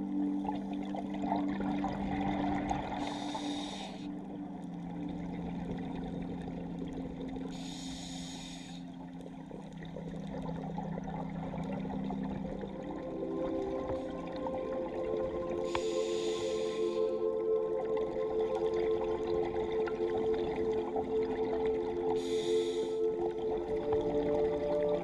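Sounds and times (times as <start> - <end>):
diver breathing through regulator: 3.0 - 4.2, 7.5 - 9.0, 15.7 - 17.1, 22.2 - 23.1.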